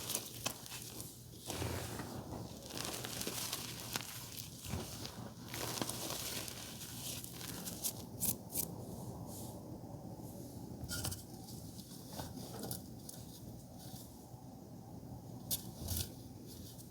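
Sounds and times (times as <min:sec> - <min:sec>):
chalk crushing and crunching: 0:02.6 - 0:08.0.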